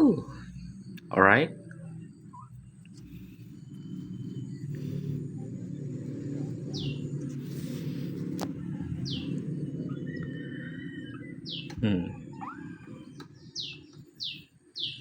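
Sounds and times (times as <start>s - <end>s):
bird chirping: 0.0s - 15.0s
steady low rumble: 0.0s - 15.0s.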